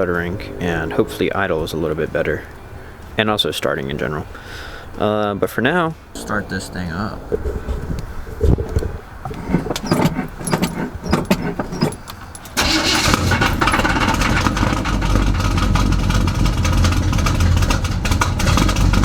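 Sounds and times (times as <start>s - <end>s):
starter cranking engine: 9.2s - 19.0s
truck engine running loud: 9.3s - 19.0s.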